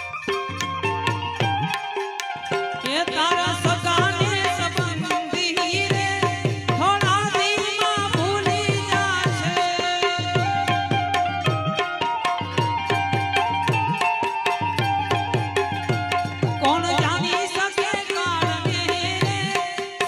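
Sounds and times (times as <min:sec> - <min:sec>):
ornamented melody instrument: 0:00.0 - 0:05.7, 0:08.4 - 0:18.7
hand drum beat: 0:00.3 - 0:20.0.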